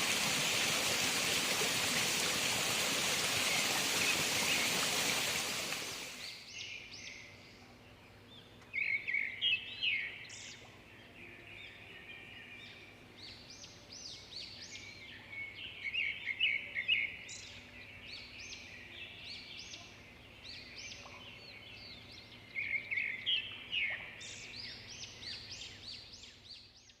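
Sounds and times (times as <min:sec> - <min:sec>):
falling water rushing: 0:00.0 - 0:06.2
birds chirping: 0:00.0 - 0:07.1.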